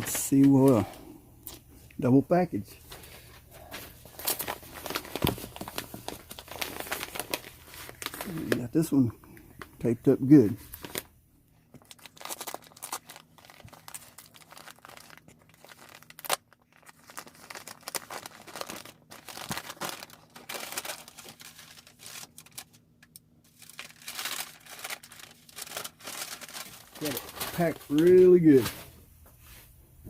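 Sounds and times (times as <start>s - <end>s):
packing tape tearing and crumpling: 4.0s - 8.7s, 11.8s - 28.7s.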